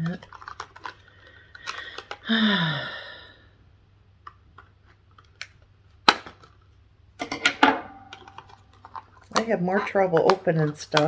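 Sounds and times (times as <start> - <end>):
packaging snapping and clicking: 0.0 - 2.3, 4.2 - 6.6, 8.1 - 11.0.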